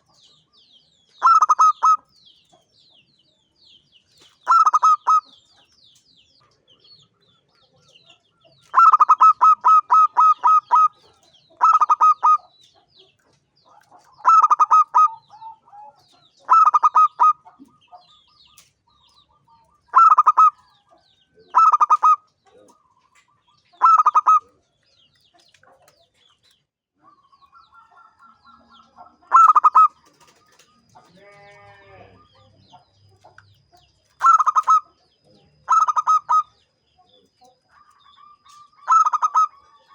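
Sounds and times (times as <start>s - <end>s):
dove cooing: 1.2s - 2.0s, 4.4s - 5.4s, 8.7s - 12.5s, 13.7s - 17.8s, 19.9s - 20.7s, 21.5s - 24.6s, 27.8s - 33.3s, 34.2s - 36.6s, 37.7s - 39.9s.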